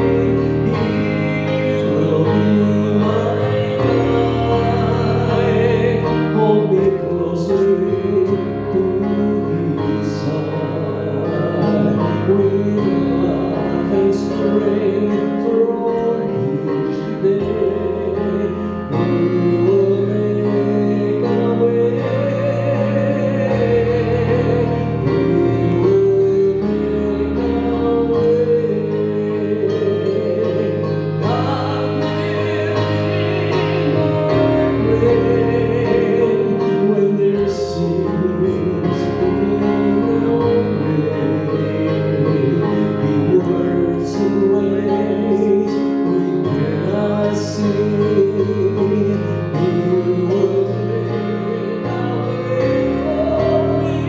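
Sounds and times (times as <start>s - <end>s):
instrumental accompaniment: 0.0s - 54.0s
person singing: 0.0s - 54.0s.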